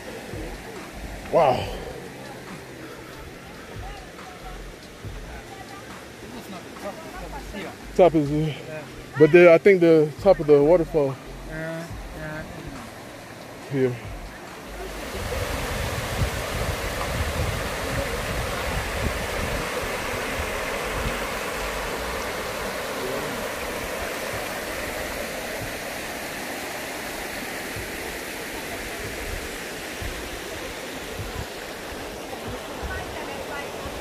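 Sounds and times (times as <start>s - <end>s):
waterfall roaring: 0.0s - 34.0s
low rumbles: 10.2s - 13.1s, 14.0s - 24.5s.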